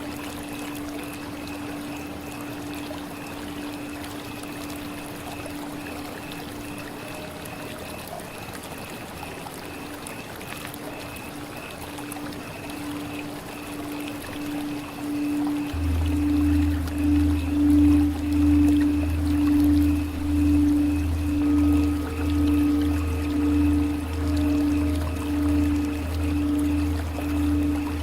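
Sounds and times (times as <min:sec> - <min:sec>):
faint pulsing high tone: 0:00.0 - 0:08.2, 0:11.7 - 0:28.0
water trickling and pouring: 0:00.0 - 0:28.0
steady low hum: 0:12.9 - 0:28.0.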